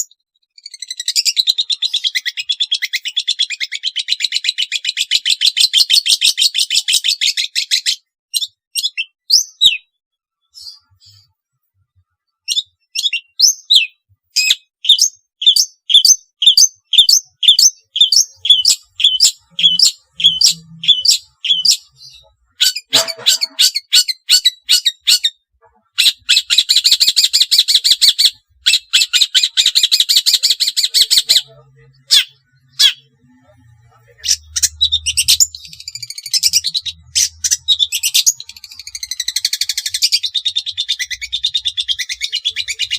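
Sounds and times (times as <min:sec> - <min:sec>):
bird singing sharp high notes: 0:15.9 - 0:25.4
bird chattering rattle: 0:22.6 - 0:25.3.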